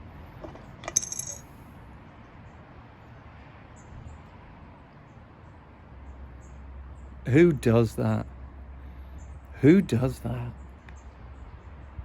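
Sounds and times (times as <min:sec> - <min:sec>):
sharp ringing clink: 0:00.8 - 0:01.5.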